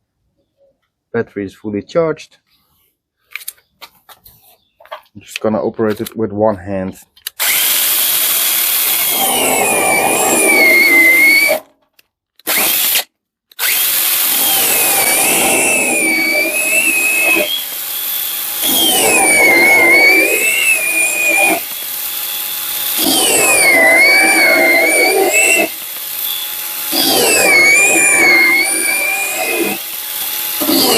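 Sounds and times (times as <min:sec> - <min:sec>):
mini chainsaw cutting branches: 0:07.3 - 0:11.8, 0:12.4 - 0:30.9.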